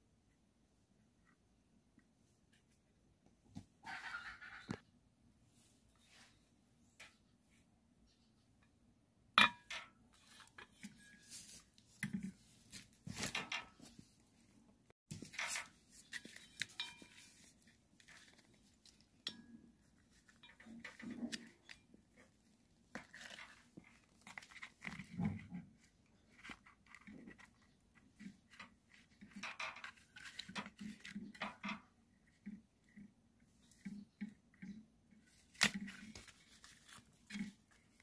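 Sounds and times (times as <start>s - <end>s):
hands handling small parts: 15.1s - 32.8s.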